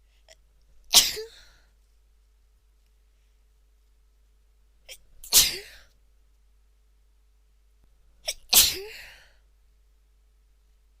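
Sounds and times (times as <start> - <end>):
woman sneezing: 1.0 - 1.5, 4.9 - 5.8, 8.3 - 9.3.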